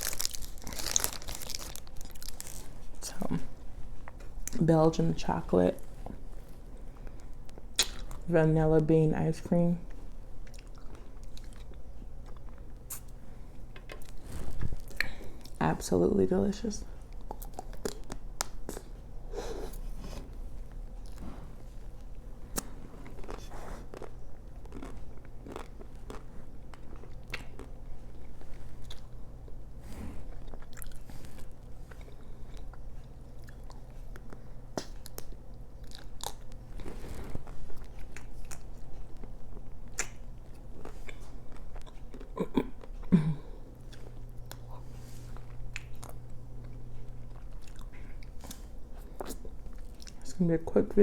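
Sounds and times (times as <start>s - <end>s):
biting and chewing ice cream bar: 0.0s - 3.0s, 10.4s - 13.2s, 17.1s - 19.0s, 22.0s - 29.6s, 30.2s - 43.1s.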